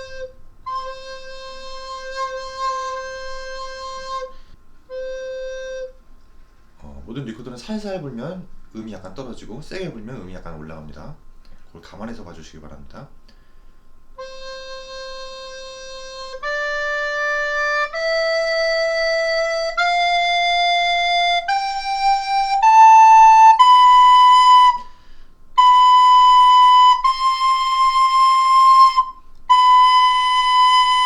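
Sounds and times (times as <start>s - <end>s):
recorder playing held notes: 0.0s - 6.0s, 14.2s - 25.0s, 25.6s - 31.0s.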